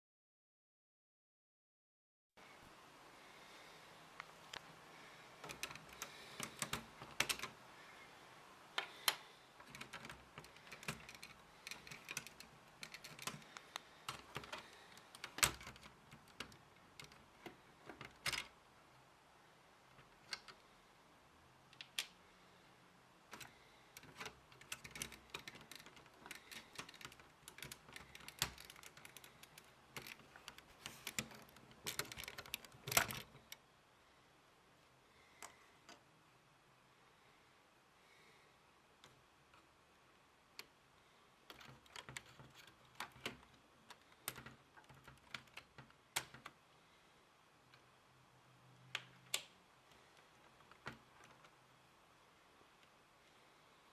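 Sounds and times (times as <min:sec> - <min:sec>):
plastic lego parts clicking: 0:05.4 - 0:07.6, 0:08.8 - 0:18.6, 0:19.9 - 0:20.6, 0:21.7 - 0:22.2, 0:23.3 - 0:33.6, 0:41.5 - 0:46.6, 0:50.2 - 0:51.6.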